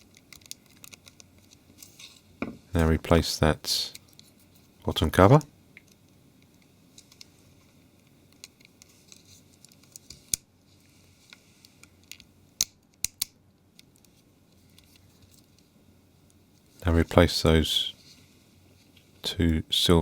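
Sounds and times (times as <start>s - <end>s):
small plastic clicks: 0.0s - 1.6s, 12.0s - 14.1s.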